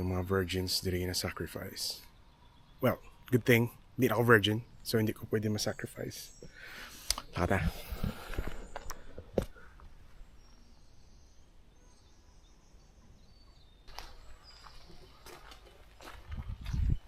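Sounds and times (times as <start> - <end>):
faint high bird calls: 1.0 - 17.0
footsteps: 13.9 - 17.0.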